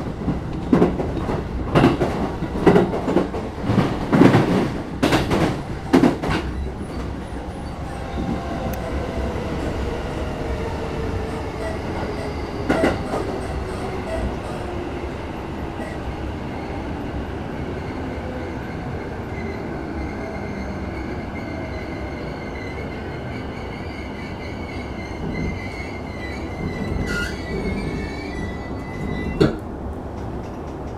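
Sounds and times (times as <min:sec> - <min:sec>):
brake and wheel squeal: 0:19.4 - 0:29.6.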